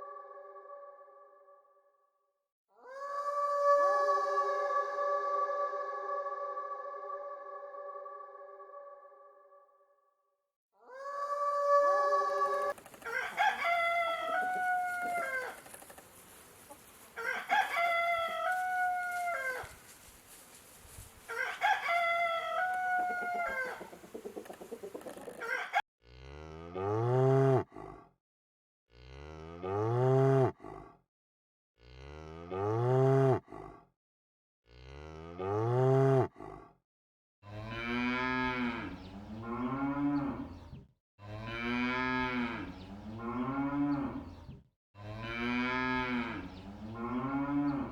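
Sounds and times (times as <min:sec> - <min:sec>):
rooster crowing: 0:11.2 - 0:16.0, 0:16.7 - 0:19.9, 0:21.3 - 0:25.8
cows mooing: 0:37.6 - 0:40.5, 0:41.3 - 0:44.3, 0:45.0 - 0:47.9.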